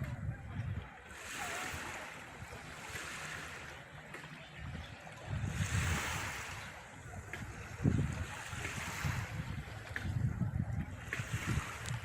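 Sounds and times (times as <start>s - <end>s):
sea waves washing ashore: 0.0s - 12.0s
wind buffeting microphone: 0.0s - 12.0s.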